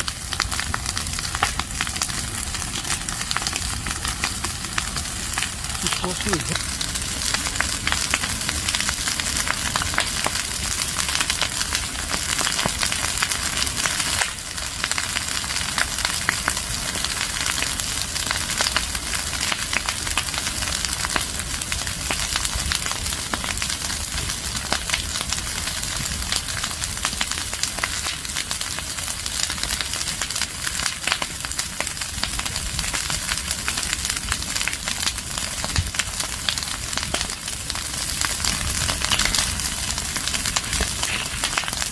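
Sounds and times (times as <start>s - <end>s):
constant fire hiss: 0.0s - 41.9s
leaves and branches crackling: 1.8s - 9.1s, 38.0s - 41.9s.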